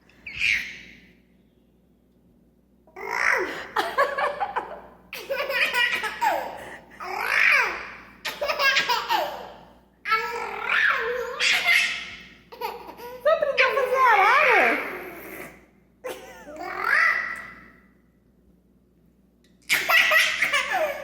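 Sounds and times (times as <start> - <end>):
baby laughing: 2.9 - 13.4, 16.1 - 17.5, 19.7 - 21.0.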